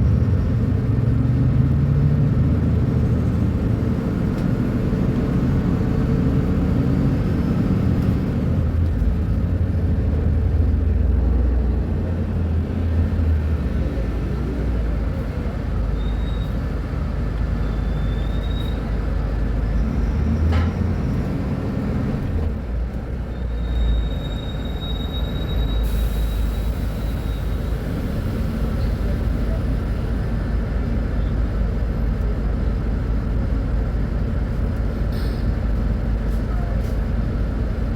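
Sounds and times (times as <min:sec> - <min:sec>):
bus engine rumble: 0:00.0 - 0:37.9
faint high whistle: 0:16.0 - 0:16.6, 0:17.6 - 0:18.9, 0:23.4 - 0:27.8.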